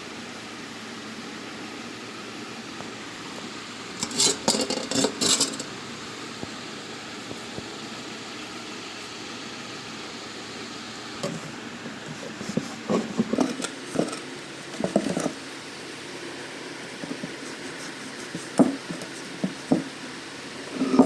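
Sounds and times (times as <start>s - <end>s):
objects knocking and clattering: 4.0s - 5.7s, 14.8s - 15.4s.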